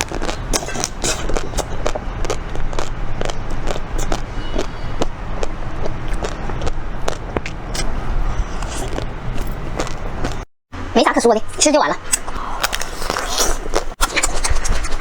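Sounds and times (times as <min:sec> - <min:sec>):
biting and chewing ice cream: 0:00.0 - 0:10.5, 0:12.0 - 0:15.0
low rumble: 0:00.0 - 0:11.0.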